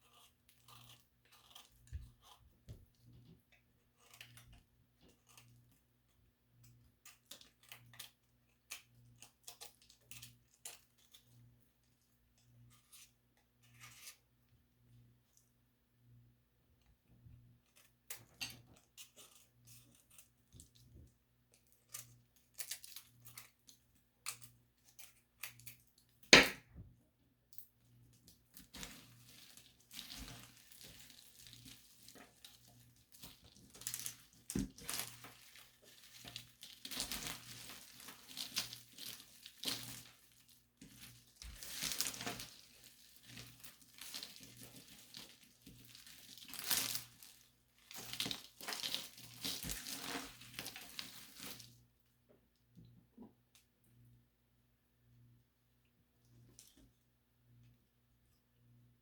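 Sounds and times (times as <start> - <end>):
crackling and crushing: 0.0 - 14.3, 16.8 - 26.6, 27.5 - 51.8
sharp knock: 26.4 - 26.7.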